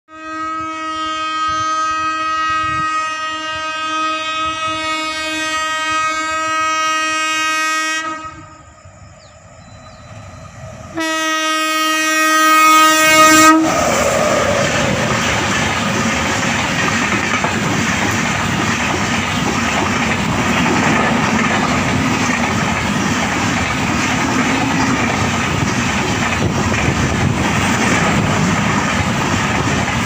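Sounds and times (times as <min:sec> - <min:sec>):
train horn blast: 0:00.1 - 0:08.7, 0:10.9 - 0:14.6
train passing with rushing rattle: 0:01.4 - 0:30.0.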